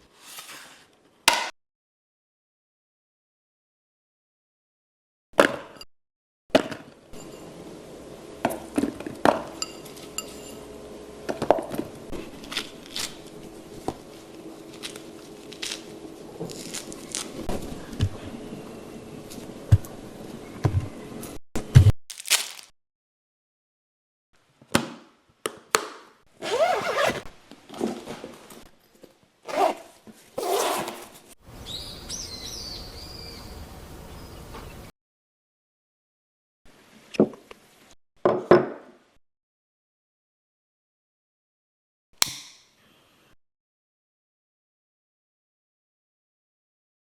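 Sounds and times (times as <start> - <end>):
squeaky rubbing: 26.4 - 27.3.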